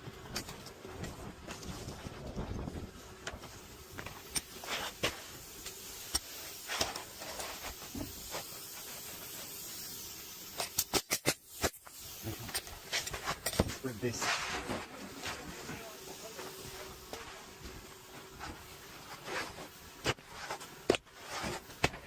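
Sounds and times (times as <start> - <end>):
pneumatic nailer shots: 10.5 - 13.8.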